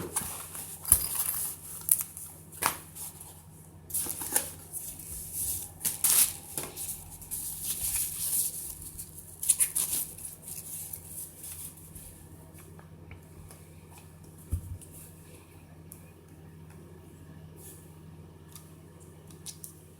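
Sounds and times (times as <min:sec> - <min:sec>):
packaging rustling and crinkling: 0:02.9 - 0:12.2.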